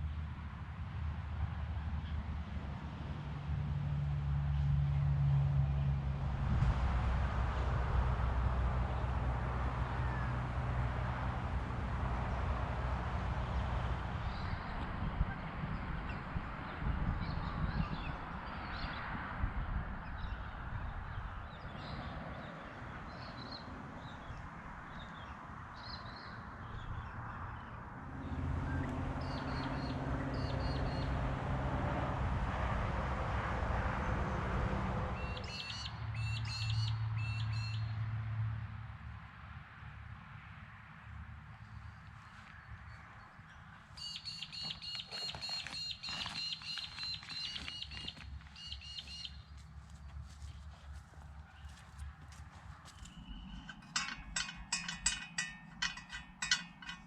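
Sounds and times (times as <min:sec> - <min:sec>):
birds chirping: 0:35.2 - 0:37.9, 0:42.2 - 0:57.0
bird chirping rapidly: 0:44.0 - 0:49.4.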